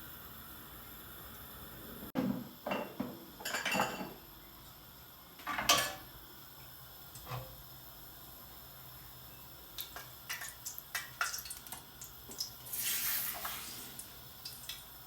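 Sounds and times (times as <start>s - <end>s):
kitchen utensils and dishes clattering: 2.2s - 4.2s, 5.4s - 6.1s.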